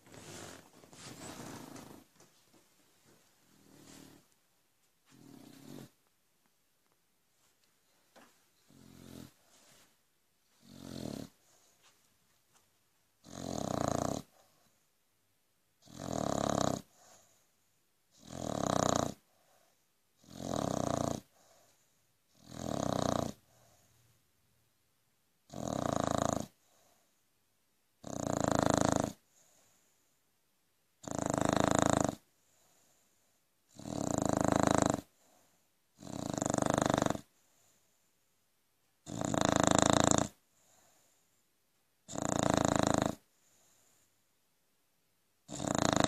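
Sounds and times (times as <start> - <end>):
dog snoring: 0.0 - 2.2, 3.5 - 4.3, 5.1 - 6.0, 8.6 - 9.8, 10.5 - 11.7, 13.2 - 14.8, 15.8 - 17.4, 18.1 - 23.9, 25.5 - 27.0, 28.0 - 29.8, 31.0 - 33.0, 33.7 - 37.7, 39.0 - 41.1, 42.0 - 43.9, 45.5 - 46.0.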